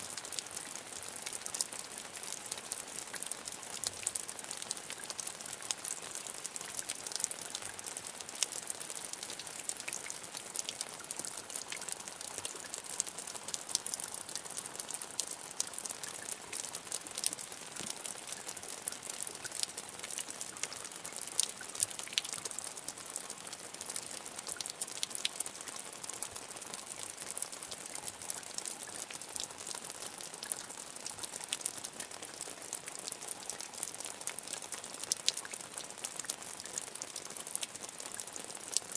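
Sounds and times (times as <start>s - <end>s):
rain on a hard surface: 0.0s - 38.9s.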